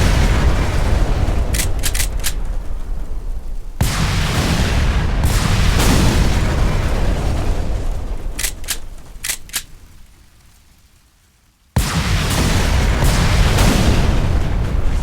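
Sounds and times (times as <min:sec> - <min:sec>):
sharp clicks: 0:01.4 - 0:02.7, 0:08.3 - 0:10.0.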